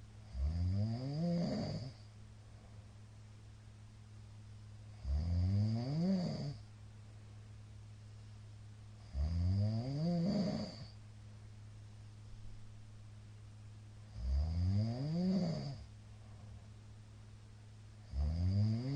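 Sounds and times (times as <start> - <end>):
steady low hum: 0.0 - 18.9
man snoring loudly: 0.3 - 2.0, 5.0 - 6.6, 9.1 - 10.9, 14.1 - 15.8, 18.1 - 18.9.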